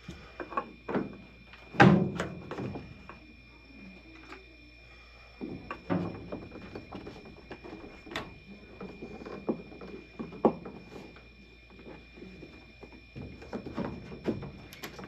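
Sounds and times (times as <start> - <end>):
plumbing parts and tools rattling: 5.4 - 15.0.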